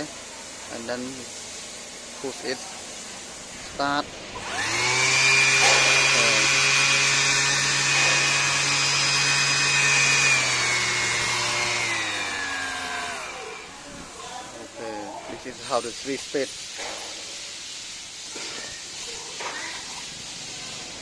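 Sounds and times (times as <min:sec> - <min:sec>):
orbital sander whining: 0:04.4 - 0:13.8.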